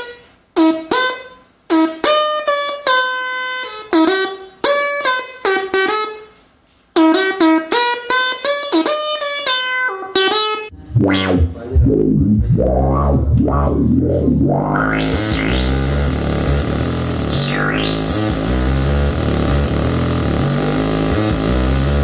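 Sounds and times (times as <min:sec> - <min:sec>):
distorted electronic drone: 0:10.8 - 0:22.0.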